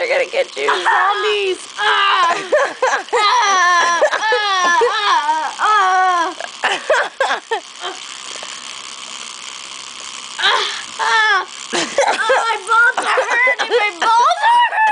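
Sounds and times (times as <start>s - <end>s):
child crying out: 3.1s - 6.4s, 10.4s - 11.5s, 14.4s - 14.9s
child breathy hiss: 10.4s - 11.1s.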